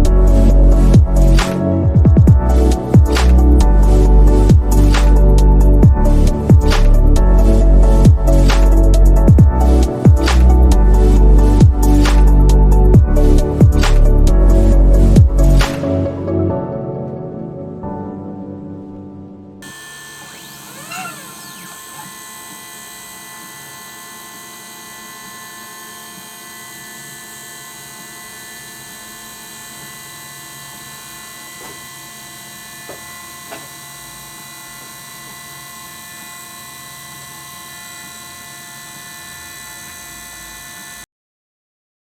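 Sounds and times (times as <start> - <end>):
cnc router whining: 19.6 - 41.1.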